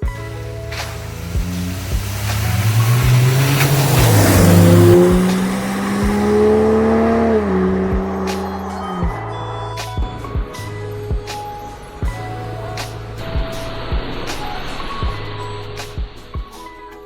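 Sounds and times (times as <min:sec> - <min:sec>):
engine revving through exhaust: 0:00.0 - 0:16.4.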